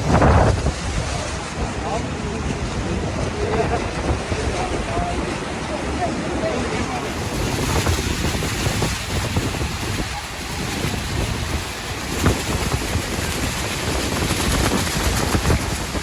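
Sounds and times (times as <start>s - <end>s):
wind buffeting microphone: 0.0s - 16.0s
waterfall rushing: 5.3s - 16.0s.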